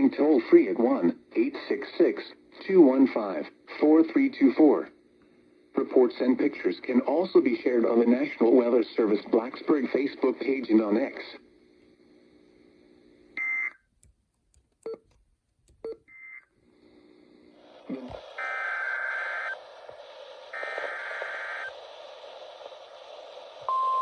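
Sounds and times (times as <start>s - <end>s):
receiver hiss: 0.0s - 13.7s, 16.1s - 24.0s
warbling two-tone data bursts: 17.9s - 23.0s.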